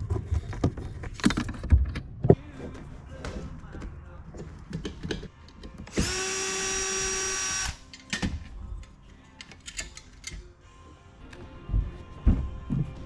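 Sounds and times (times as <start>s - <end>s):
power drill running: 5.9s - 7.8s.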